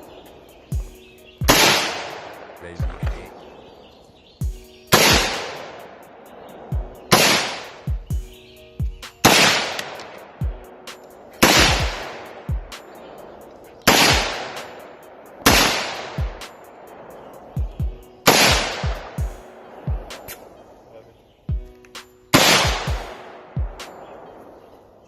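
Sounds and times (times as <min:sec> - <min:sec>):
loud gunshots with echo: 0:01.4 - 0:03.3, 0:04.9 - 0:08.0, 0:09.2 - 0:10.4, 0:11.3 - 0:13.2, 0:13.8 - 0:20.4, 0:22.3 - 0:24.6
faint gunshots: 0:01.5 - 0:03.3, 0:05.0 - 0:06.0, 0:07.1 - 0:07.9, 0:09.2 - 0:10.3, 0:11.4 - 0:12.9, 0:13.9 - 0:14.8, 0:15.4 - 0:16.6, 0:18.3 - 0:19.2, 0:22.3 - 0:23.2.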